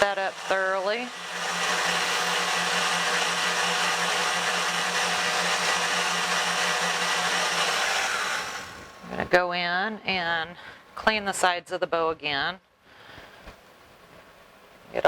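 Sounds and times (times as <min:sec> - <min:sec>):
electric mixer running: 0:00.0 - 0:09.2.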